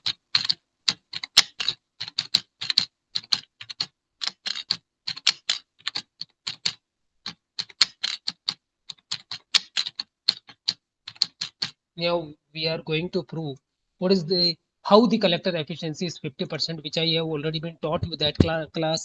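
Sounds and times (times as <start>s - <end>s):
keyboard typing: 0.0s - 11.8s, 17.9s - 18.6s.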